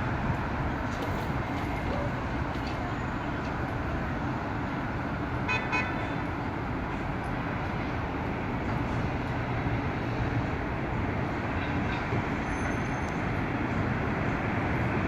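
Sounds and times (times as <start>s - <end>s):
traffic and city noise: 0.0s - 15.0s
car horn toot: 5.5s - 6.0s.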